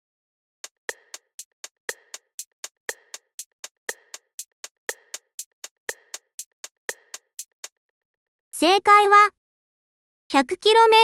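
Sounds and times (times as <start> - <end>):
drum machine clicking beat: 0.6 - 7.8.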